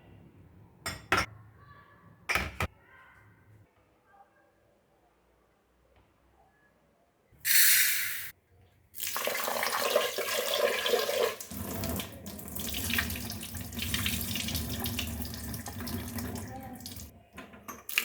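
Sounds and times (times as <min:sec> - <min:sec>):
loud hiss: 0:07.5 - 0:08.3
tap water running into sink: 0:09.0 - 0:18.0.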